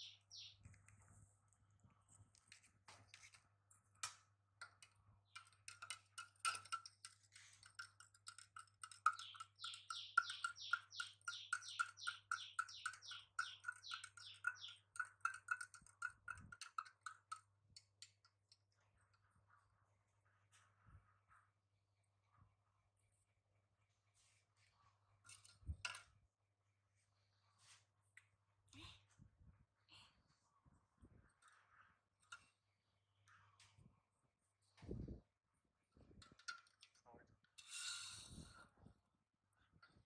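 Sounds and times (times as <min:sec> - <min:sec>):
bird chirping: 0:00.0 - 0:00.7, 0:08.3 - 0:15.8.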